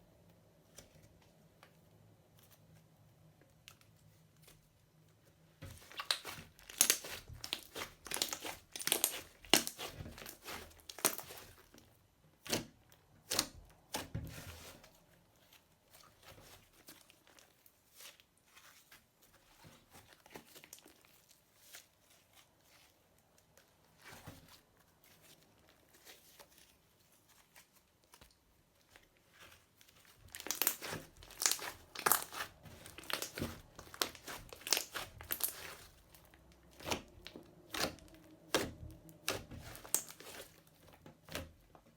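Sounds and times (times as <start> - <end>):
slime crackling and popping: 5.8 - 11.6, 30.1 - 40.6.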